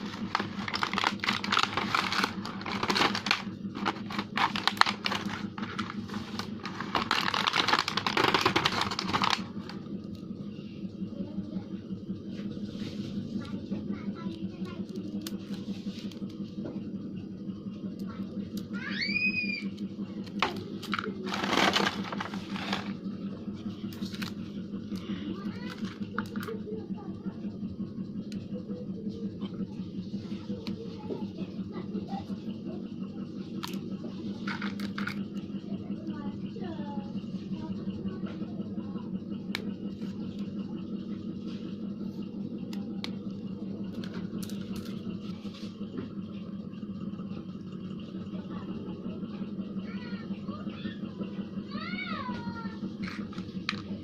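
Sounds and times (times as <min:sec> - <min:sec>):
toy train motor buzzing: 0:00.0 - 0:09.9, 0:18.5 - 0:23.0, 0:24.0 - 0:27.1
toy train motor humming: 0:00.0 - 0:54.0.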